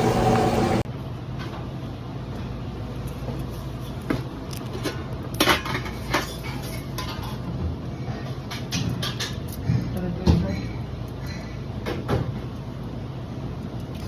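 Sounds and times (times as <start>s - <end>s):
low hum: 0.0s - 0.8s.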